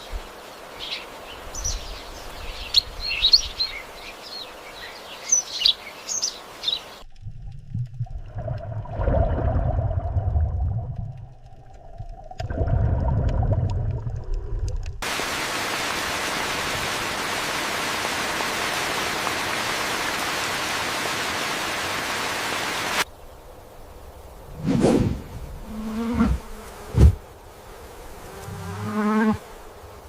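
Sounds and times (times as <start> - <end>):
low rumbling: 7.0 - 15.0
static hiss: 15.0 - 24.4.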